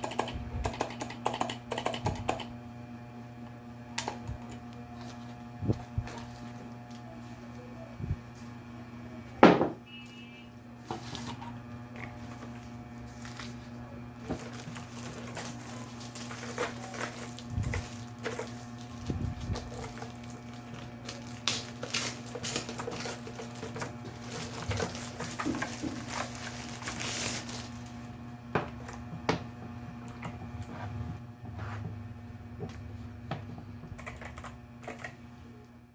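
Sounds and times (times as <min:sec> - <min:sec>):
steady low hum: 0:00.0 - 0:35.9.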